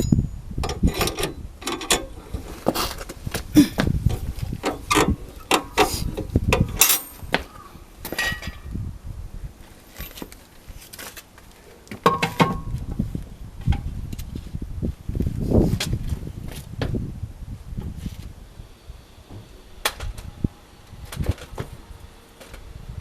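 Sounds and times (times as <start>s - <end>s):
hand tools clinking on metal: 4.1s - 8.6s
ringing metallic clink: 6.8s - 7.4s.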